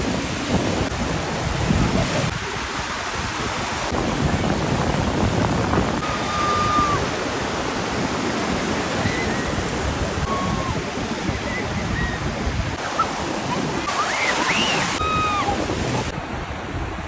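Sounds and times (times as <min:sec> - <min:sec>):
ocean surf washing in: 0:00.0 - 0:17.0
wind buffeting microphone: 0:00.0 - 0:17.0
thin whistle-like tone: 0:06.0 - 0:07.0, 0:13.9 - 0:15.4.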